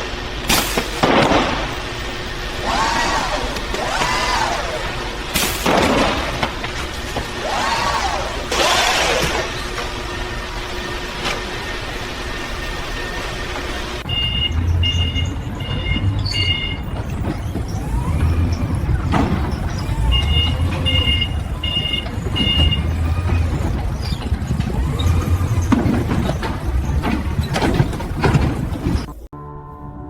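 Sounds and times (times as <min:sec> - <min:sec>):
low machinery rumble: 0:00.0 - 0:30.0
electronic warning beeps: 0:09.6 - 0:27.9.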